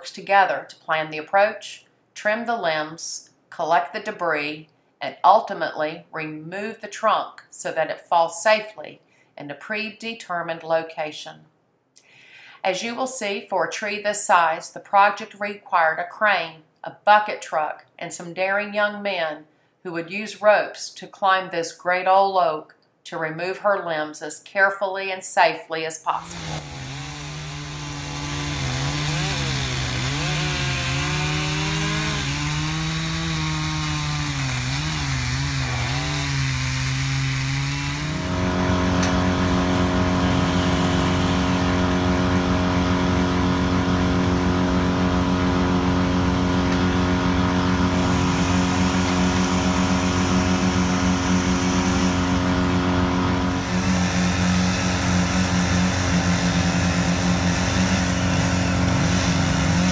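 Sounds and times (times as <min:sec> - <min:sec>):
chainsaw engine running: 0:26.2 - 0:59.9.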